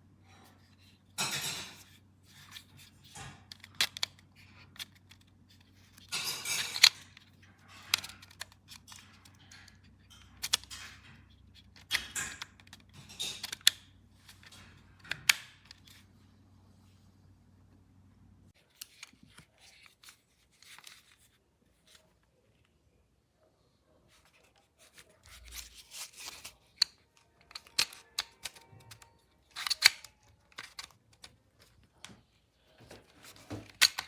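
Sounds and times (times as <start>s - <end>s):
faint low hum: 0.0s - 34.0s
rustling scrapes: 24.1s - 29.8s.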